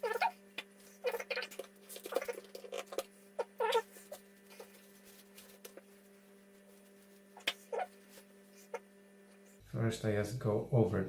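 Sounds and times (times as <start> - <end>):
cloth squeaking on glass screen: 3.4 - 4.8, 7.4 - 8.9.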